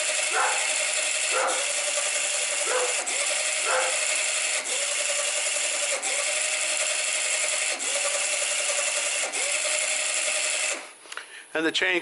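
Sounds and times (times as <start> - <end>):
electric motor whine: 0.0 - 10.9.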